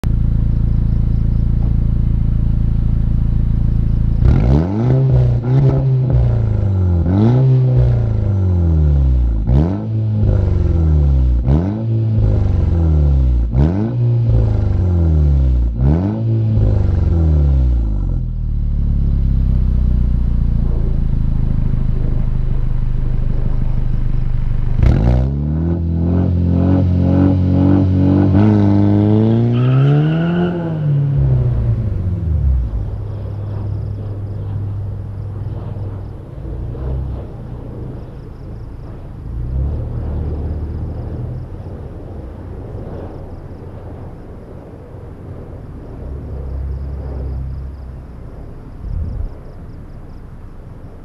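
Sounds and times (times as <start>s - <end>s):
exhaust pops and crackles: 0.0s - 6.6s
car engine idling and revving: 0.0s - 51.0s.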